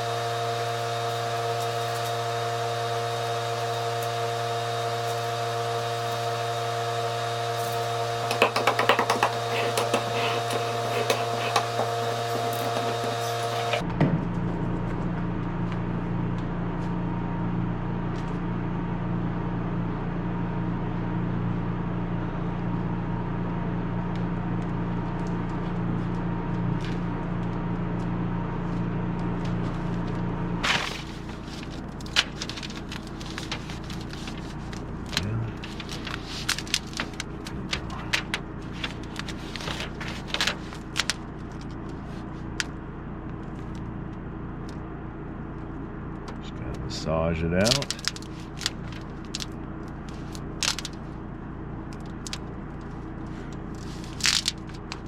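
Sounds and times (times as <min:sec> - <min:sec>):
electric hand planer running: 0:00.0 - 0:13.9.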